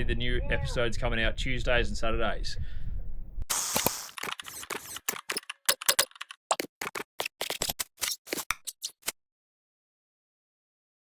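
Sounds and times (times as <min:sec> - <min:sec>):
sharp clicks and ticks: 0:03.5 - 0:09.2.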